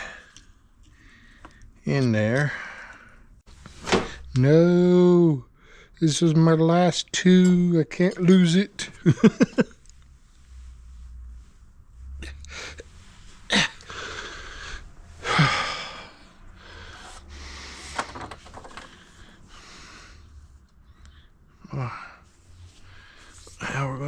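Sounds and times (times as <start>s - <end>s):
man breathing hard: 12.2s - 23.6s.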